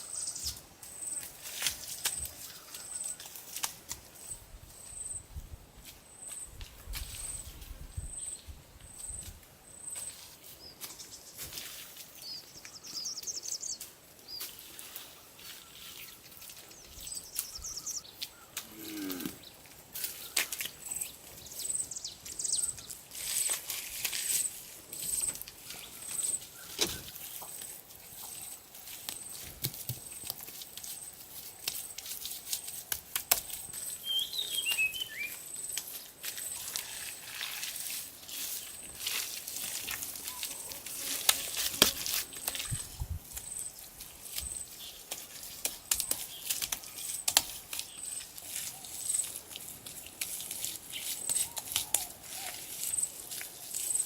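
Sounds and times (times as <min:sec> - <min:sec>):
bird calls: 0:12.2 - 0:23.0, 0:34.0 - 0:35.6
high bird chirp: 0:34.0 - 0:35.4.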